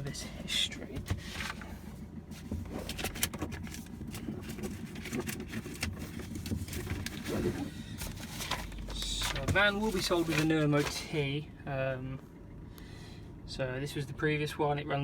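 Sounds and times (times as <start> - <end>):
diesel van engine idling: 0.0 - 15.0.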